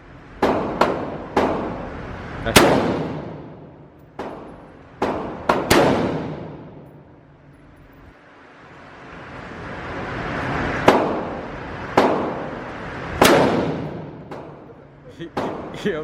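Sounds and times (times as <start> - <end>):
gunshots with echoing tail: 2.5 - 7.0, 13.2 - 14.7.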